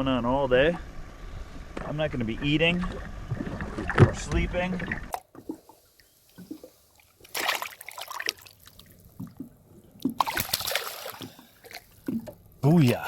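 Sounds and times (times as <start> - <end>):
water splashing and trickling: 2.6 - 13.0.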